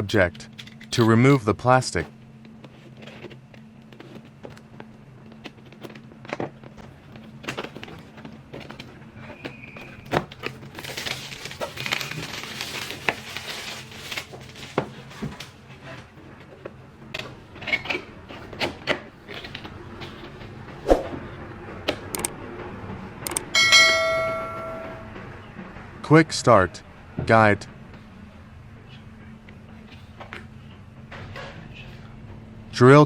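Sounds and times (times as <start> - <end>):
plastic wrapping clicks and scratches: 2.7 - 16.1
plastic wrapping crinkling: 10.4 - 15.2.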